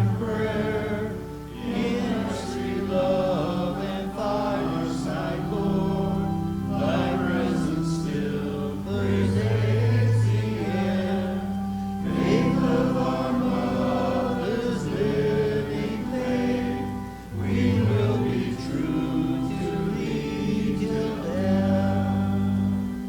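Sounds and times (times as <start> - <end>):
congregation singing a hymn: 0.0 - 23.0
long-held low accompanying notes: 0.0 - 23.0
singers breathing: 11.5 - 12.6, 16.9 - 17.4.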